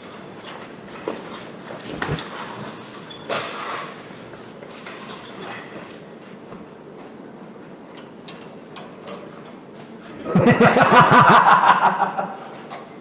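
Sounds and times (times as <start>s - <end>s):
person laughing heartily: 10.2s - 12.5s.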